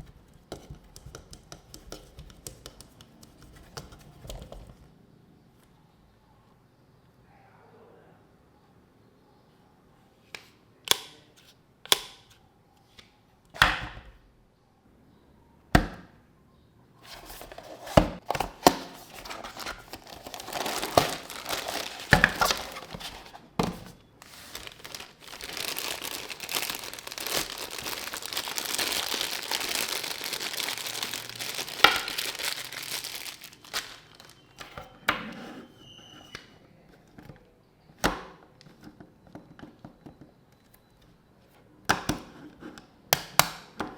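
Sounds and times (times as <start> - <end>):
wrapping crinkling and tearing: 18.5 - 23.5, 24.2 - 34.6.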